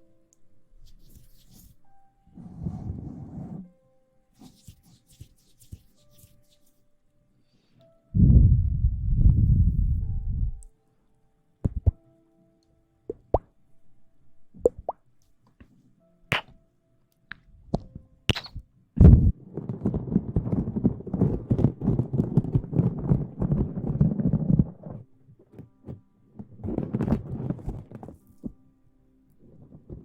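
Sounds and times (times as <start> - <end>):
crackling rustle: 19.3 - 28.6.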